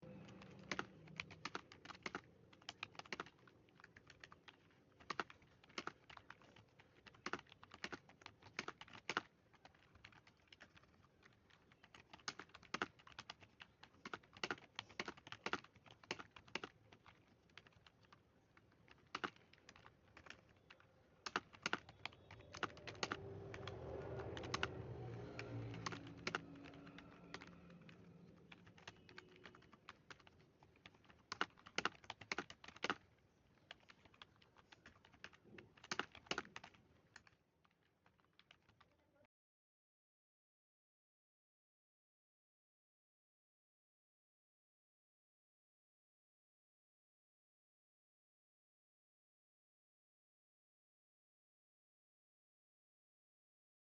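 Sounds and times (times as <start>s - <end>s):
low background hum: 0.0s - 35.9s
typing on computer keyboard: 0.1s - 39.0s.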